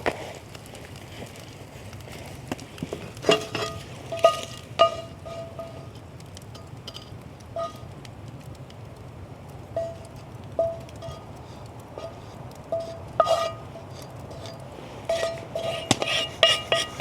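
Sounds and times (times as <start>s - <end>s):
utensil striking metal cookware: 3.2s - 7.9s, 9.8s - 11.4s, 12.0s - 17.0s.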